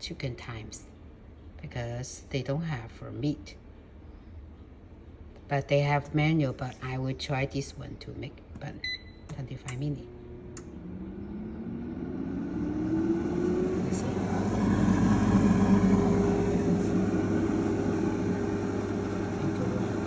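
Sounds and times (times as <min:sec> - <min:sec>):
air fryer fan whirring: 0:08.8 - 0:20.0.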